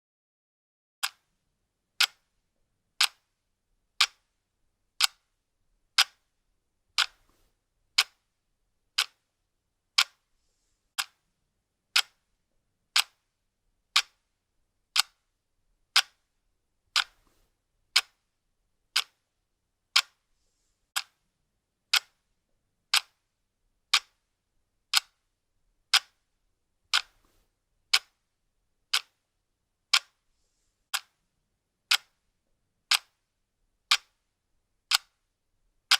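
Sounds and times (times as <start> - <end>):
clock ticking: 1.0 - 1.3, 2.0 - 2.3, 3.0 - 3.3, 4.0 - 4.3, 5.0 - 5.2, 6.0 - 6.2, 7.0 - 7.2, 8.0 - 8.2, 9.0 - 9.2, 10.0 - 10.2, 11.0 - 11.2, 11.9 - 12.2, 12.9 - 13.2, 13.9 - 14.2, 14.9 - 15.2, 15.9 - 16.2, 16.9 - 17.3, 17.9 - 18.2, 18.9 - 19.2, 19.9 - 20.2, 20.9 - 21.2, 21.9 - 22.2, 22.9 - 23.2, 23.9 - 24.3, 24.9 - 25.2, 25.9 - 26.2, 26.9 - 27.2, 27.9 - 28.2, 28.9 - 29.2, 29.9 - 30.2, 30.9 - 31.2, 31.9 - 32.2, 32.9 - 33.2, 33.9 - 34.2, 34.9 - 35.2.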